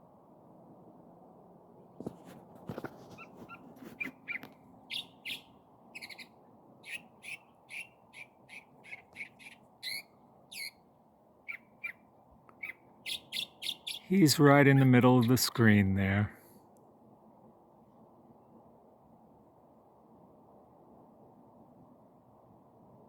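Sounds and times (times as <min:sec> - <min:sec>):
songbird chirping: 0:03.1 - 0:10.8, 0:11.4 - 0:16.4
faint background hiss: 0:04.5 - 0:23.0.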